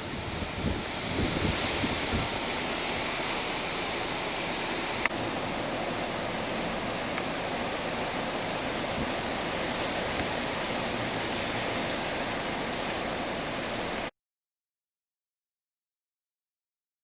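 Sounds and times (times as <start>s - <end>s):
wind buffeting microphone: 0.0s - 3.8s, 5.2s - 12.9s.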